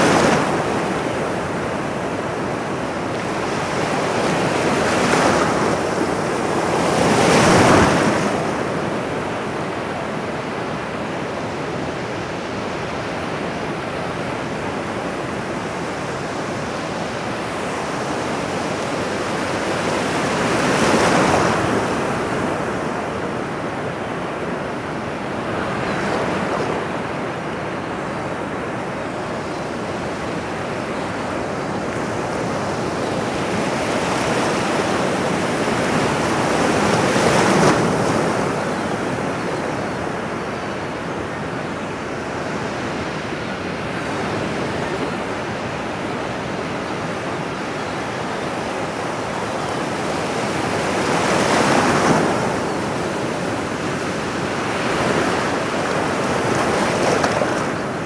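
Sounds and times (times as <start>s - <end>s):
ocean waves breaking: 25.2s - 58.0s.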